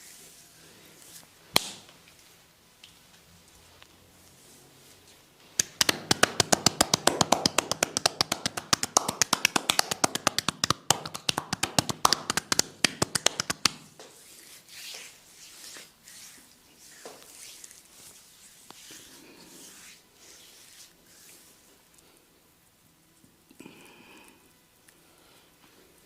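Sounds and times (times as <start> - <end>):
hands rapidly tapping on body: 5.6 - 14.0.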